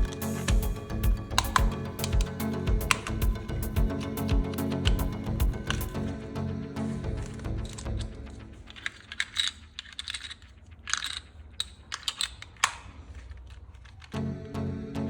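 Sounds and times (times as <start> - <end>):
background music: 0.0 - 9.5, 14.2 - 15.0
plastic toy parts clicking: 1.3 - 6.1, 7.2 - 14.2.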